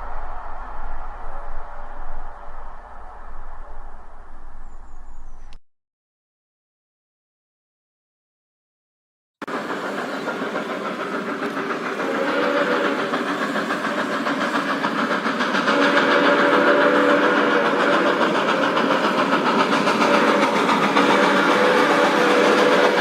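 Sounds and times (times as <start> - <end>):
steam locomotive chuffing: 9.4 - 23.0
steam whistle blasts: 11.9 - 13.8, 15.6 - 19.1, 19.7 - 23.0.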